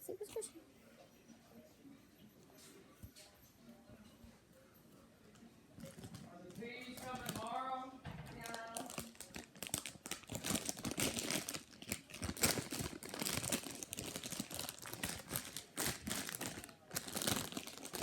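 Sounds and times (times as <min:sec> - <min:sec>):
plastic packaging crinkling: 0:05.8 - 0:07.6, 0:08.3 - 0:18.0.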